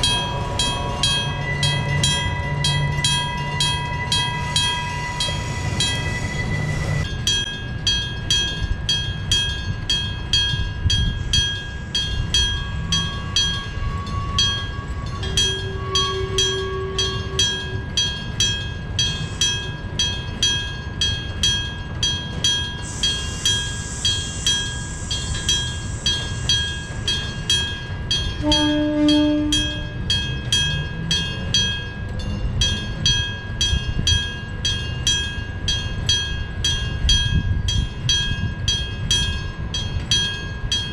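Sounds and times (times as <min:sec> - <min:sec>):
passing train rumble: 0:00.0 - 0:40.9
train horn blast: 0:13.8 - 0:17.6, 0:28.4 - 0:30.0.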